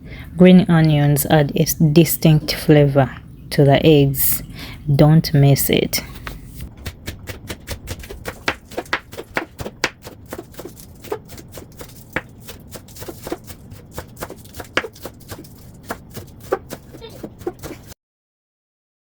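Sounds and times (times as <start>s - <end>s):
knife chopping on cutting board: 6.2s - 18.0s.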